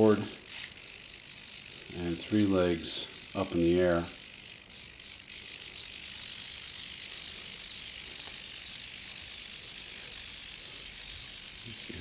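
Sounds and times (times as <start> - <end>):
robot servo gears chattering: 0.0 - 12.0.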